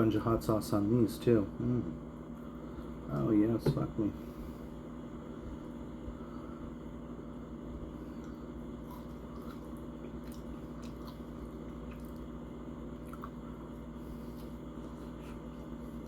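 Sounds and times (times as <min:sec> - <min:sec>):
person chewing food: 0:07.8 - 0:16.0.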